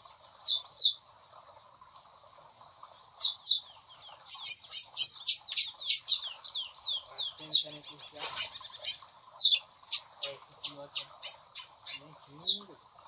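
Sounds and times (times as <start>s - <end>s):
finches chirping: 0.2s - 1.0s, 2.8s - 12.8s
high insect buzz: 3.2s - 12.8s.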